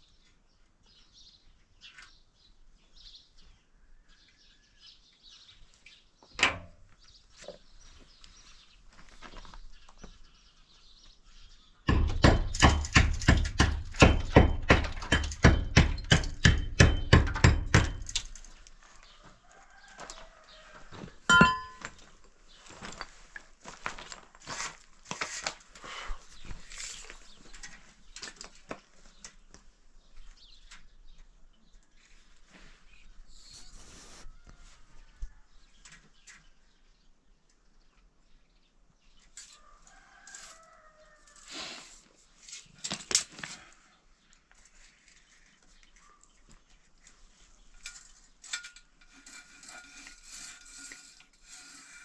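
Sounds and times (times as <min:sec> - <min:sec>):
rapid sharp knocks: 0:11.9 - 0:18.1.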